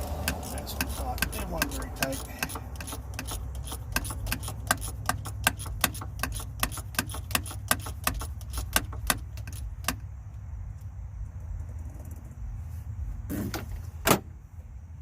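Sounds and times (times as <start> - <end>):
steady low rumble: 9.6 - 13.3.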